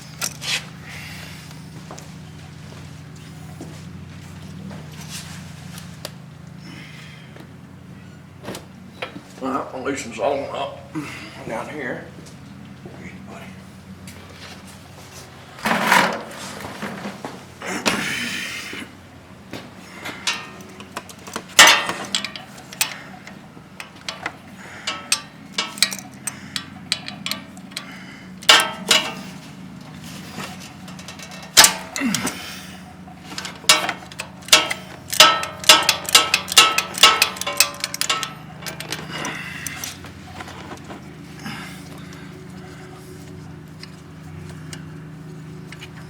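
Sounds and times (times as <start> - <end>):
hand tools clinking on metal: 19.9 - 46.0.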